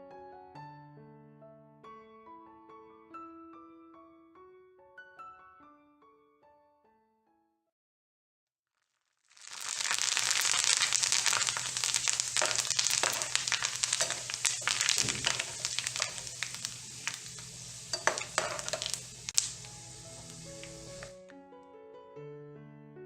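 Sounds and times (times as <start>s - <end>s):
dough deep-frying in hot oil: 9.3s - 21.2s.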